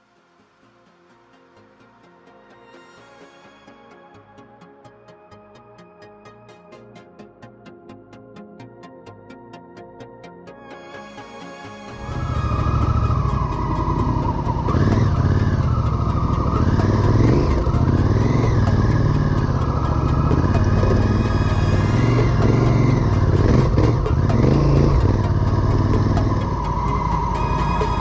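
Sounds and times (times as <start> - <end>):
music playing: 0.0 - 28.0
motorcycle engine revving: 12.0 - 28.0.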